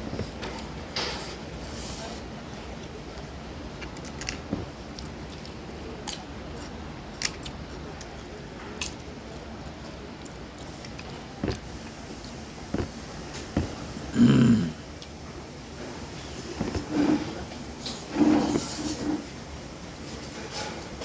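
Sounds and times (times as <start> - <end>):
steady background hum: 0.0 - 21.0.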